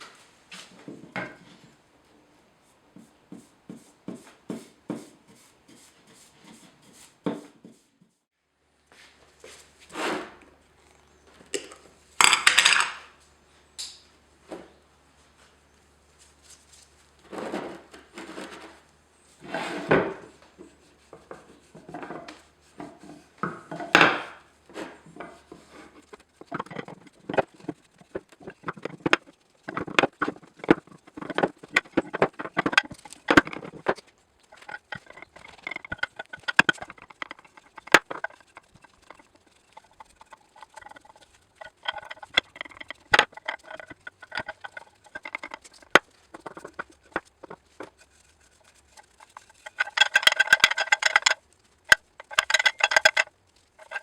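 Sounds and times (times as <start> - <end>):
tools and parts knocking on workbench: 21.8 - 24.5, 25.1 - 34.0, 52.2 - 54.0.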